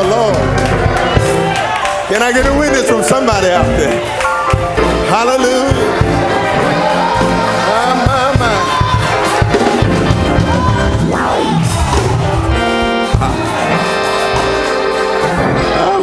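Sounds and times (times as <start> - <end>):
person preaching: 0.0 - 0.6, 2.1 - 4.0, 5.0 - 6.0, 7.6 - 8.9
congregation calling out: 0.0 - 16.0
organ and keyboard music: 0.0 - 16.0.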